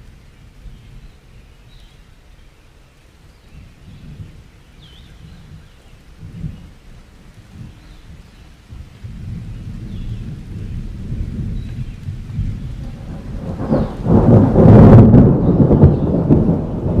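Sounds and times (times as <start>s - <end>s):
thunder rumbling: 3.6s - 17.0s.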